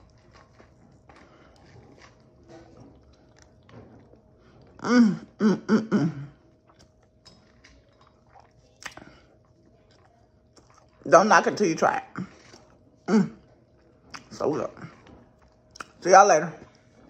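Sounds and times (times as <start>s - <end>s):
faint chewing: 0.0s - 4.9s, 6.3s - 11.0s, 12.2s - 16.0s.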